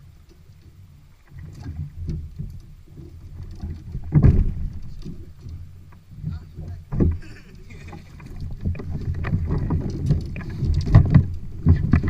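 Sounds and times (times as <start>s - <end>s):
low rumbling: 0.0s - 12.0s
kayak hull knocking: 3.4s - 12.0s
heavy thump: 4.0s - 5.2s.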